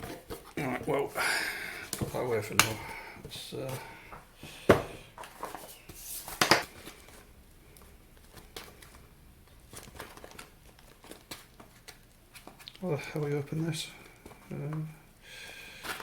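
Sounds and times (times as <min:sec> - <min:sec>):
packaging rustling: 0:05.1 - 0:14.8.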